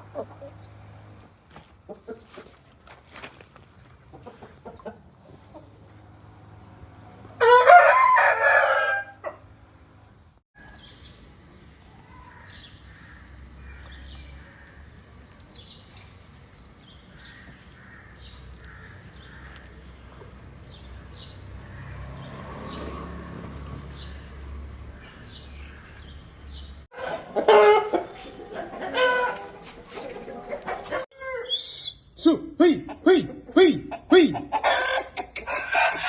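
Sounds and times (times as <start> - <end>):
chickens chirping and clucking: 0.0 - 7.4, 26.5 - 31.9, 32.8 - 36.0.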